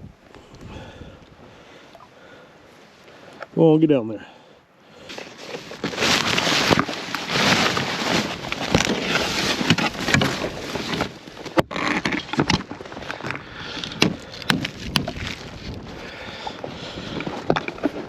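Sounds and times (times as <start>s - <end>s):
wind buffeting microphone: 13.8s - 17.7s.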